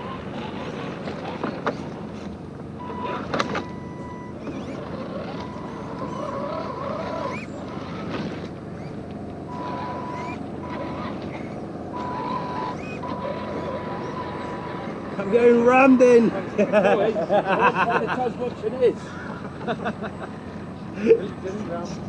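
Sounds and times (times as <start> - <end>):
electric motor whining in bursts: 0.0 - 16.5
steady background noise: 0.0 - 22.0.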